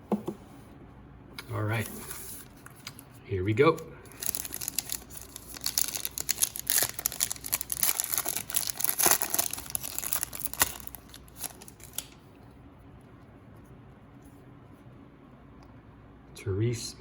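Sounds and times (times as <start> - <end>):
plastic wrapper tearing and crinkling: 4.1 - 12.3.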